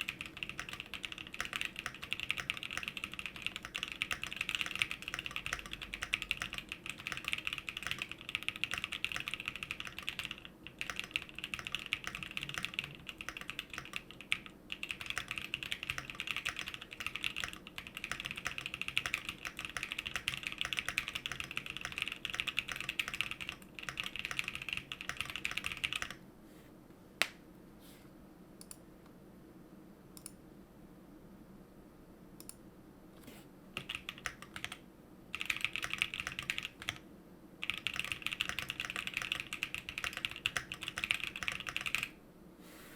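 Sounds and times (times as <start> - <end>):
typing on mechanical keyboard: 0.0 - 26.2, 33.8 - 37.0, 37.6 - 42.1.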